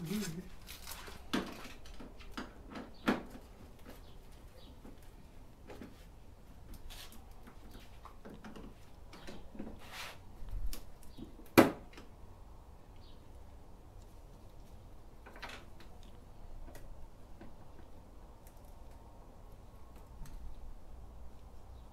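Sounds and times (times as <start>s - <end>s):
scrapes and rustles: 0.0s - 10.9s.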